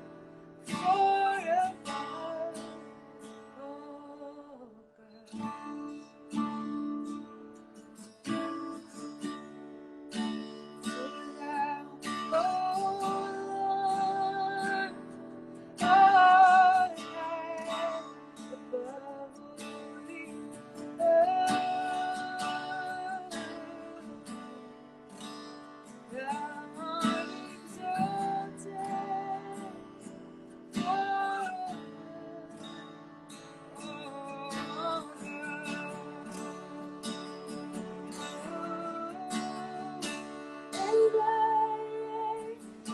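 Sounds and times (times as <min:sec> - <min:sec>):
acoustic guitar strumming: 0:00.0 - 0:42.9
woman singing with vibrato: 0:00.7 - 0:02.8, 0:11.0 - 0:15.0, 0:15.8 - 0:24.5, 0:26.1 - 0:30.1, 0:30.8 - 0:32.7, 0:33.8 - 0:42.9.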